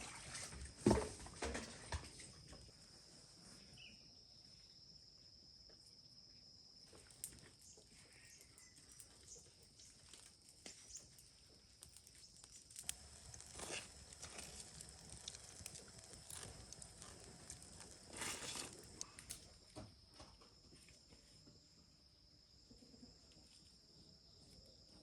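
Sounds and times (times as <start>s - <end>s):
faint clicks: 11.8s - 19.5s.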